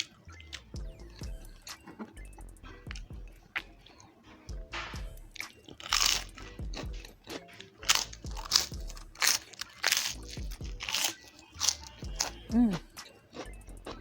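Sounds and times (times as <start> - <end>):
crunching and chewing: 0.0 - 2.2, 5.3 - 14.0
soft background music: 0.0 - 14.0.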